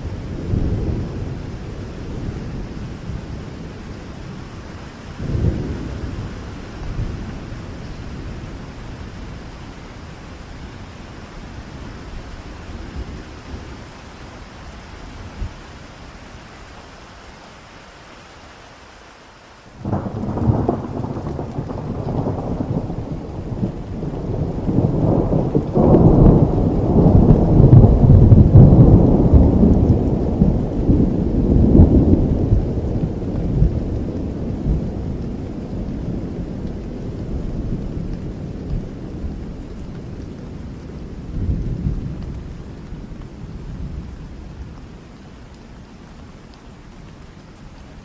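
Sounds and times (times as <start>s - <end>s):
steady rain: 0.0s - 48.0s
thunder rolling: 19.8s - 39.6s.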